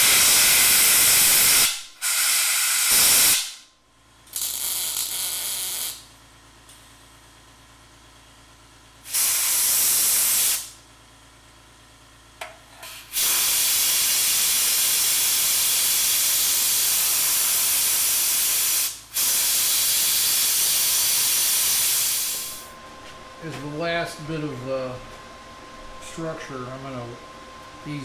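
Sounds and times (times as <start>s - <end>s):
compressed air hissing: 0.0s - 3.6s, 9.1s - 10.8s, 12.8s - 22.7s.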